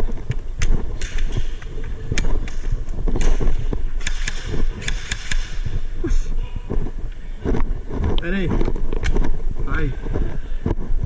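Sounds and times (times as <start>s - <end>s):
low rumble of movement: 0.0s - 11.0s
airsoft gun shots: 1.0s - 1.6s, 3.2s - 5.8s.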